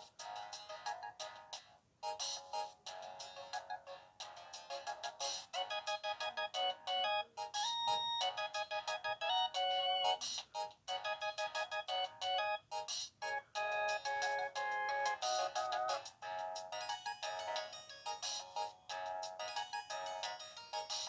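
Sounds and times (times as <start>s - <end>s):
polyphonic phone ringtone: 5.6s - 10.2s, 10.9s - 20.9s.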